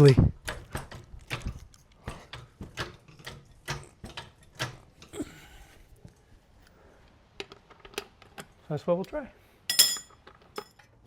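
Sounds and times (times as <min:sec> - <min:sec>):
metallic clicks and knocks: 0:00.0 - 0:05.1, 0:07.4 - 0:11.0.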